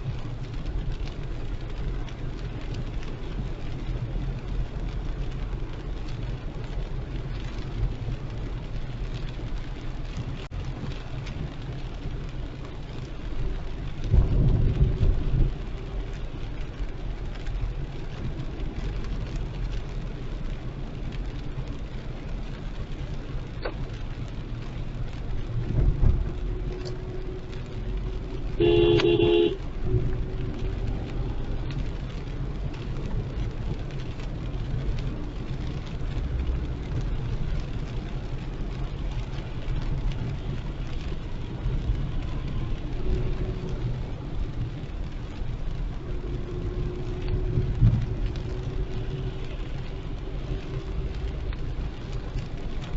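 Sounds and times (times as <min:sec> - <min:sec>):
heavy rain: 0:00.0 - 0:52.9
tyres on wet road: 0:00.0 - 0:52.9
car horn: 0:28.6 - 0:29.6.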